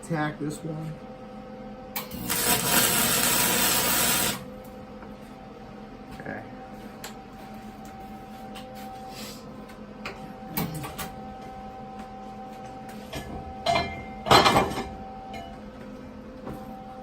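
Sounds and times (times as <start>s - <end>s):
steady background hum: 0.0s - 17.0s.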